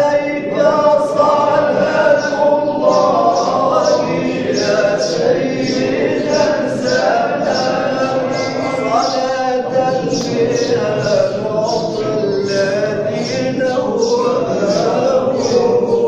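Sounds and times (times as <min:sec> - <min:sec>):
men chanting together: 0:00.0 - 0:16.0.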